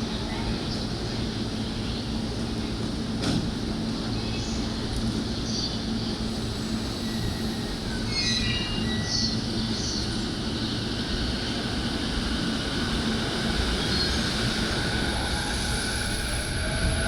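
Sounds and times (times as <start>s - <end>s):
train wheels rumbling on rails: 0.0s - 17.0s
high wheel squeals: 6.6s - 9.9s.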